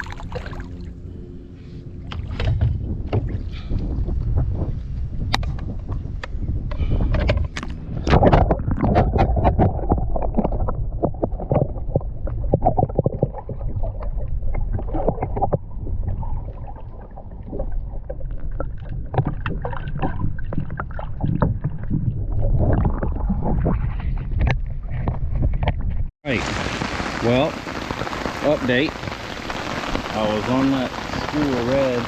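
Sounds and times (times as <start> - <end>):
water splashing against hull: 0.0 - 32.0
wind rumbling over microphone: 0.0 - 32.0.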